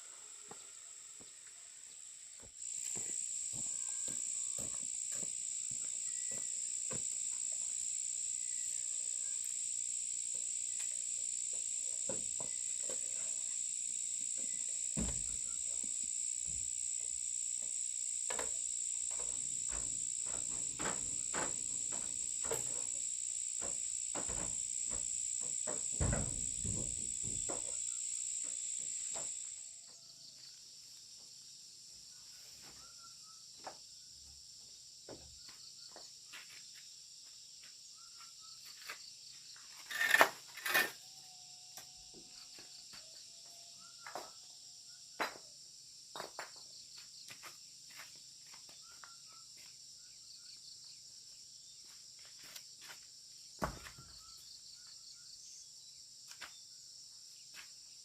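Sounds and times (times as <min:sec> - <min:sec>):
insects shrilling: 0:02.6 - 0:29.7.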